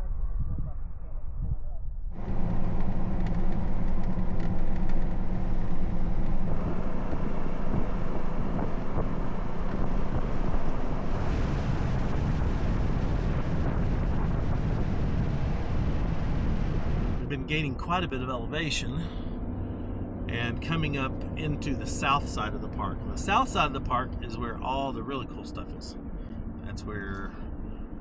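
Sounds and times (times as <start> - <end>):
wind on microphone: 0.0 - 17.3
car engine and tyre noise: 2.1 - 28.0.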